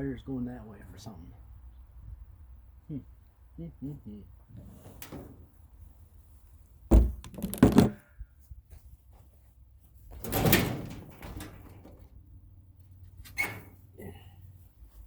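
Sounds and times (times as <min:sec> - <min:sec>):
metal rattling clatter: 0:06.9 - 0:08.0, 0:10.2 - 0:12.2
sharp metal thunks: 0:06.9 - 0:08.0, 0:10.2 - 0:12.0.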